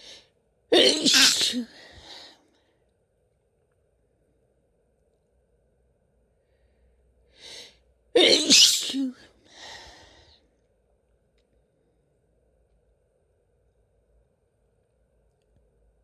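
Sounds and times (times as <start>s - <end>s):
woman sneezing: 0.8s - 2.2s, 8.2s - 9.9s
sharp intake of breath: 7.4s - 10.3s
breathy exhale: 9.5s - 10.4s.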